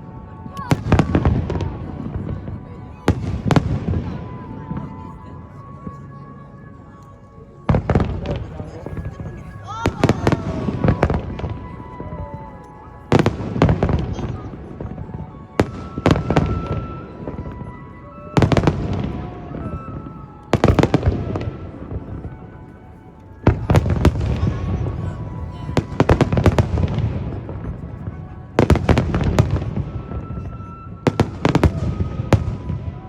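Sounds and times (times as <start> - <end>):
fireworks bursting: 7.7 - 17.8, 23.4 - 33.0.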